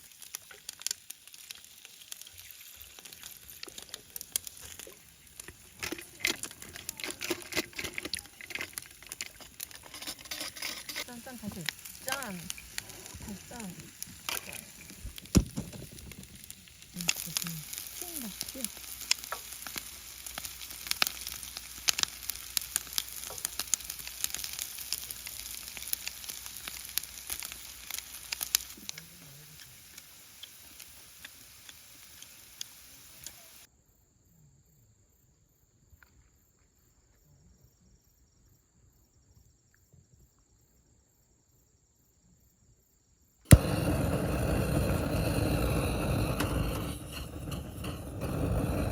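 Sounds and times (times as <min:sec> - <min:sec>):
campfire crackling: 0:00.0 - 0:33.7, 0:43.5 - 0:48.9.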